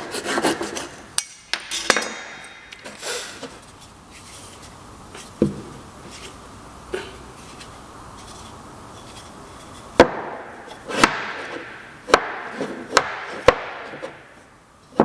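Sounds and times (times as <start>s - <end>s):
sharp wooden knocks: 10.0s - 14.3s.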